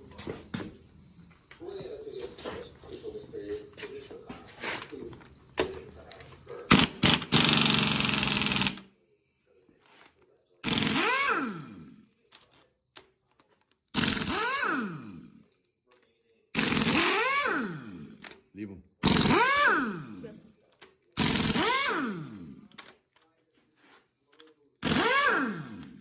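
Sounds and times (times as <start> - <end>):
power tool motor spinning up: 6.7 - 8.8, 10.6 - 12.0, 14.0 - 15.3, 16.6 - 18.3, 19.0 - 20.3, 21.2 - 22.7, 24.8 - 26.0
faint clicks of tools: 12.2 - 13.8, 15.5 - 16.2, 22.7 - 24.7.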